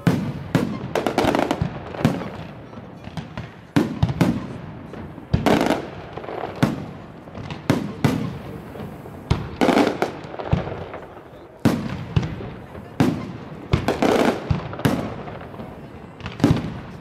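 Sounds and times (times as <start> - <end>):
firework crackle: 0.0 - 17.0.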